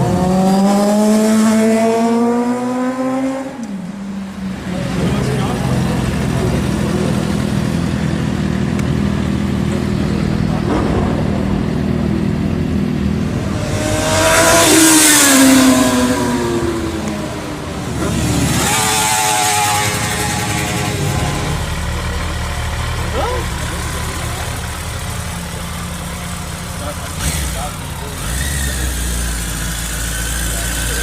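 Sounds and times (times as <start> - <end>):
motorcycle passing by: 0.0 - 3.6, 13.2 - 21.8
vehicle passing: 0.0 - 24.7.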